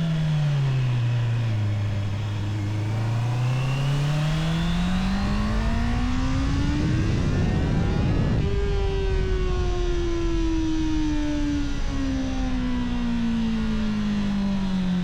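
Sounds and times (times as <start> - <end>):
low wind rumble: 4.8 - 14.3.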